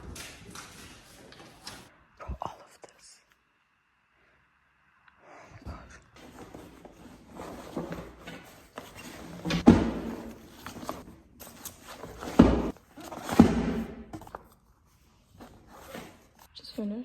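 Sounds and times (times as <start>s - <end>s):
books rustling into backpack: 6.2s - 16.5s.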